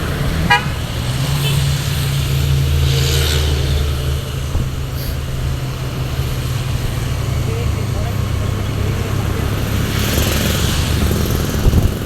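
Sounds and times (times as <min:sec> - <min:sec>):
diesel truck engine droning: 0:00.0 - 0:12.0
brief hiss: 0:05.0 - 0:05.2.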